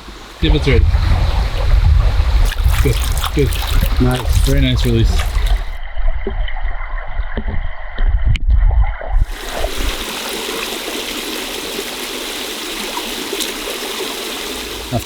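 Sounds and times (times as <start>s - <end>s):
river water rushing: 0.0s - 5.7s, 9.3s - 15.0s
heavy low rumbling: 0.1s - 5.8s.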